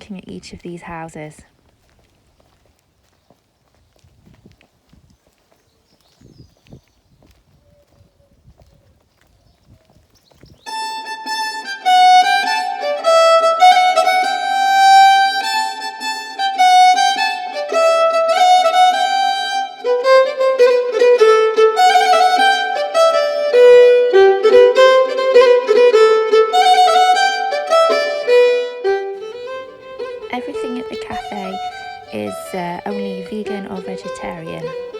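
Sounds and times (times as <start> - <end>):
violin melody: 10.6 - 34.9.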